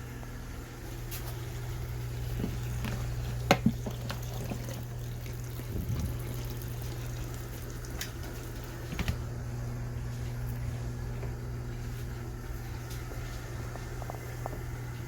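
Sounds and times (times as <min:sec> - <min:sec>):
washing machine motor hum: 0:00.0 - 0:15.0
water sloshing in tub: 0:00.9 - 0:09.2.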